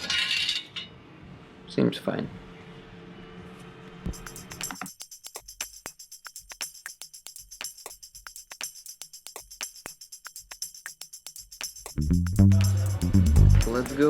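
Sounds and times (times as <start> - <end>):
tambourine percussion beat: 4.1 - 14.0.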